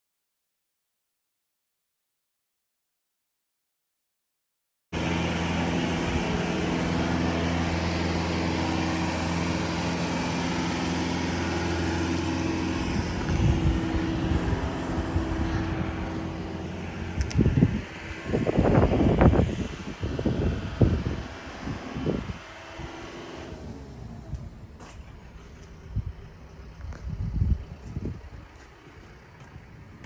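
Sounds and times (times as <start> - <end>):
engine humming steadily: 5.0 - 30.0
wind on microphone: 12.7 - 16.4, 17.0 - 23.0, 25.8 - 30.0.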